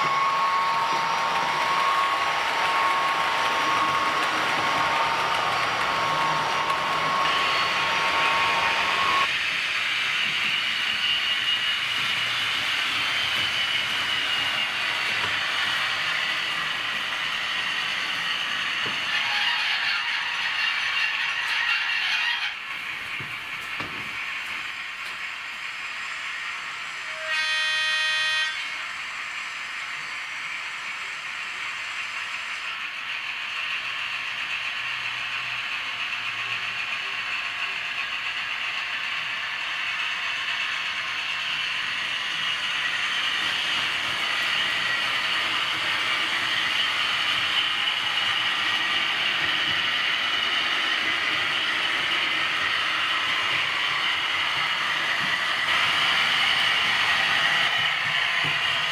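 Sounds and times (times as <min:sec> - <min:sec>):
diesel locomotive horn: 0:00.0 - 0:09.2, 0:27.0 - 0:28.9
locomotive rolling along track: 0:00.0 - 0:58.9.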